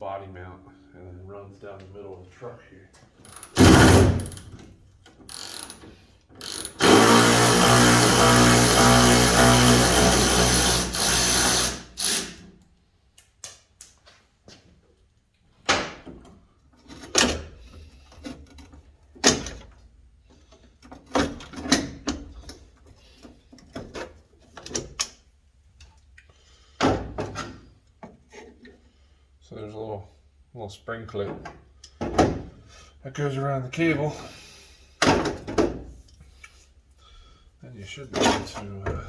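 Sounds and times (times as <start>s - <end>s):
power tool running: 6.4s - 12.4s.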